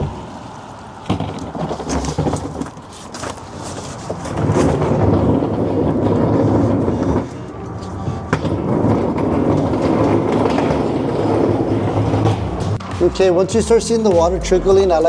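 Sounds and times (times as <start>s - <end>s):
knocks and clatter of hand tools: 1.0s - 12.8s.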